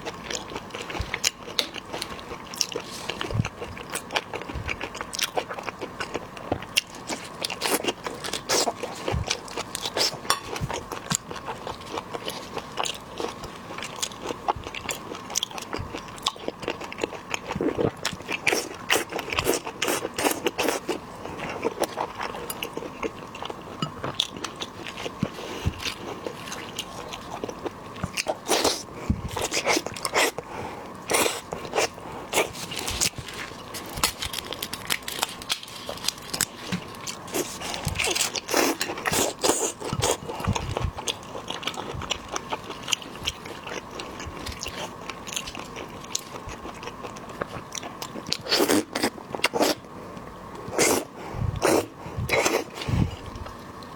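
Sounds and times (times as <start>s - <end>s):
chewing: 0.0s - 49.8s
shrimp shells cracking: 32.6s - 38.4s.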